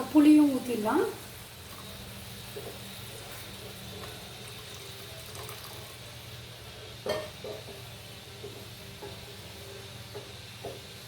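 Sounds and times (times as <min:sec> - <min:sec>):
liquid poured into frying paste: 0:01.6 - 0:06.4
clank against pan: 0:07.0 - 0:07.8.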